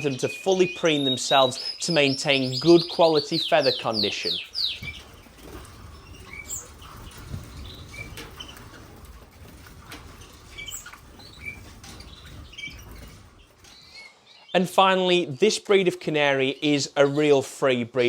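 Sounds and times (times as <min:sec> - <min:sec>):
birds fluttering wings: 0:02.2 - 0:14.0.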